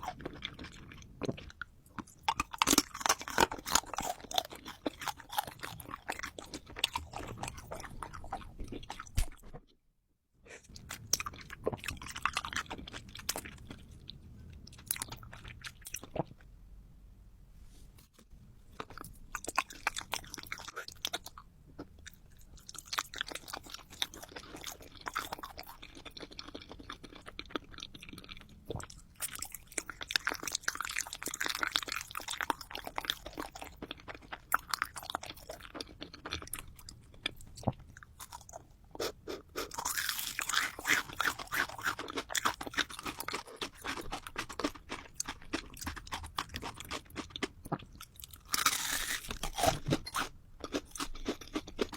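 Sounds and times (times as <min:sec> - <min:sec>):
candy being crunched and chewed: 0:39.6 - 0:51.9.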